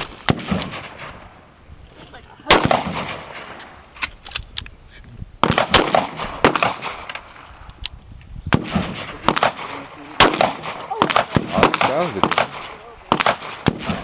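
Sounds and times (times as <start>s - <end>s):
echoing gunshots: 0.0s - 1.5s, 2.4s - 3.8s, 5.4s - 7.4s, 8.5s - 14.0s.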